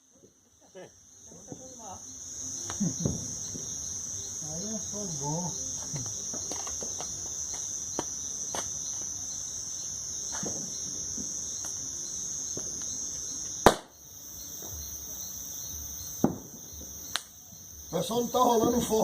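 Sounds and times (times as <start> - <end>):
burning wood crackling: 0.0 - 19.0
crickets chirping: 0.0 - 19.0
loud sharp bang: 13.6 - 14.0, 16.2 - 16.6.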